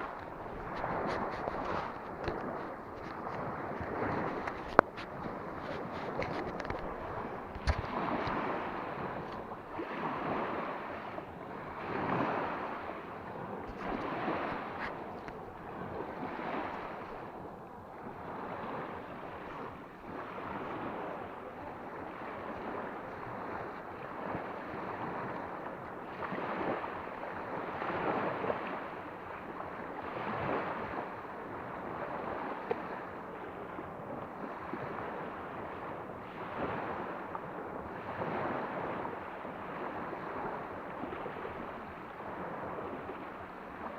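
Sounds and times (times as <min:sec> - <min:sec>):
waves washing onto shore: 0:00.0 - 0:43.9.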